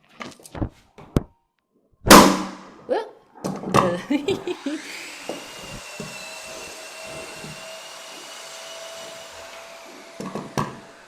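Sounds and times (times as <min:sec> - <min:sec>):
small electric motor whining: 0:04.4 - 0:11.0.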